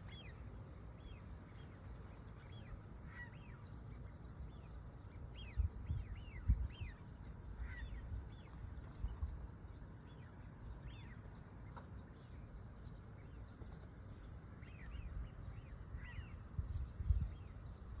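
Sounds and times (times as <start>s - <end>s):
birds chirping: 0.0s - 18.0s
steady low rumble: 0.0s - 18.0s.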